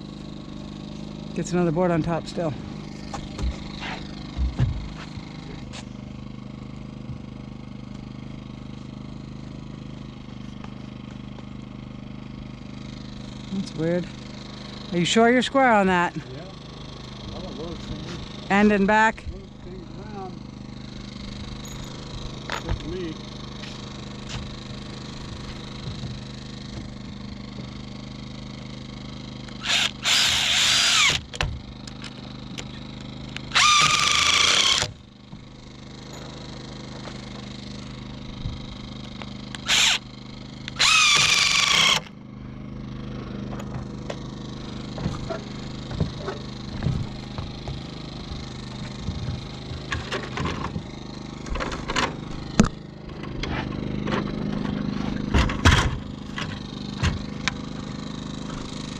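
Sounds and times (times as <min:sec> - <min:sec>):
steady low hum: 0:00.0 - 0:06.4, 0:12.6 - 0:58.9
wood knocking and clattering: 0:04.3 - 0:05.0
power drill driving screws: 0:29.5 - 0:32.1, 0:33.3 - 0:35.0, 0:39.5 - 0:42.1.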